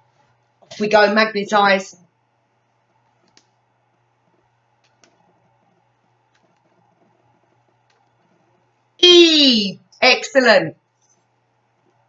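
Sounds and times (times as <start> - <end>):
faint clicks: 2.8 - 3.6, 4.2 - 8.6.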